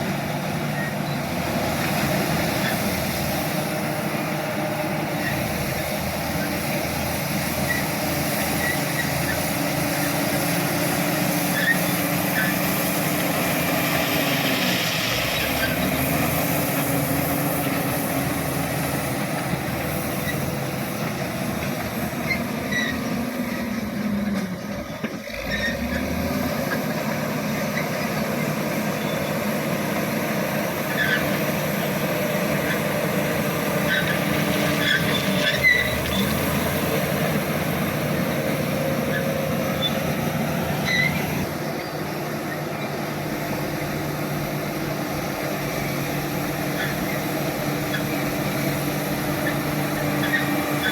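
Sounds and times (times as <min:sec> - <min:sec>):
bulldozer diesel engine running: 0:00.0 - 0:50.9
short high squeaks: 0:11.4 - 0:12.7, 0:33.8 - 0:36.6, 0:39.0 - 0:42.6, 0:49.3 - 0:50.9.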